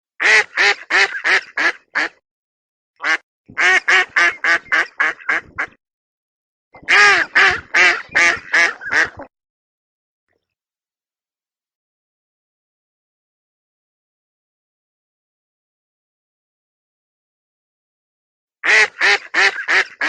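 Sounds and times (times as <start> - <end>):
duck quacking: 0.2 - 2.2, 3.0 - 5.8, 6.8 - 9.3, 18.6 - 20.0.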